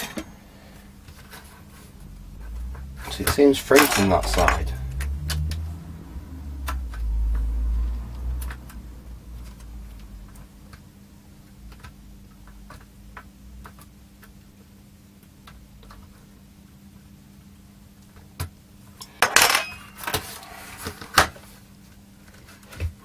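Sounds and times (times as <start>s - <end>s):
faint steady hum: 0.0s - 23.0s
low rumble: 1.7s - 10.4s.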